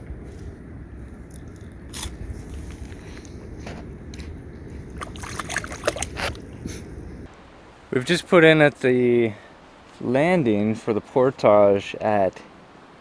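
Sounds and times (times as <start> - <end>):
water sloshing around a canoe: 4.8 - 6.8.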